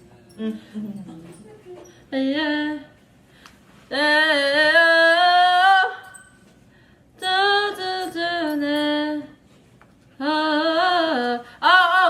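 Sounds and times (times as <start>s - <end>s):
woman singing unaccompanied: 0.4s - 3.0s, 3.9s - 6.2s, 7.2s - 9.4s, 10.2s - 12.0s.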